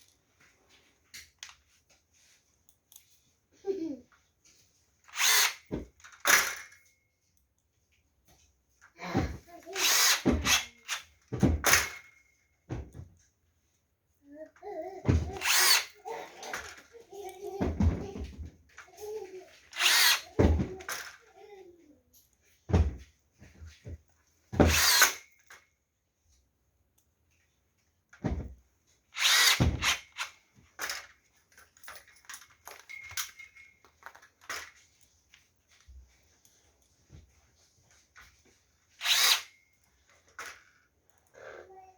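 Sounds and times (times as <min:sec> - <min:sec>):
parts clicking and rattling: 0:00.0 - 0:13.3, 0:14.4 - 0:25.7, 0:26.9 - 0:41.4
power drill running: 0:05.1 - 0:05.7, 0:09.8 - 0:11.0, 0:15.4 - 0:16.0, 0:19.8 - 0:20.4, 0:24.7 - 0:25.2, 0:29.2 - 0:30.2, 0:39.0 - 0:39.5.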